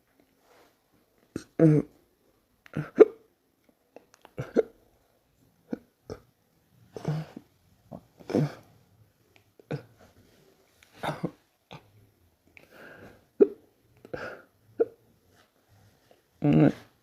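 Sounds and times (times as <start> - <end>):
person hiccuping: 1.3 - 2.0, 2.7 - 3.3, 4.3 - 4.8, 13.4 - 13.6, 14.2 - 15.0.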